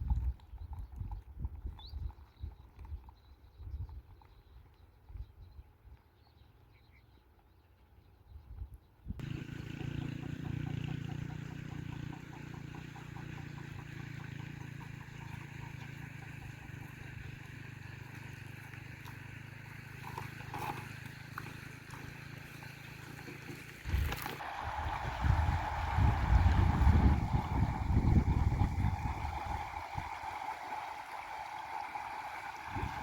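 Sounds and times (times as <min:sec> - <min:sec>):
low engine hum: 0:09.2 - 0:33.0.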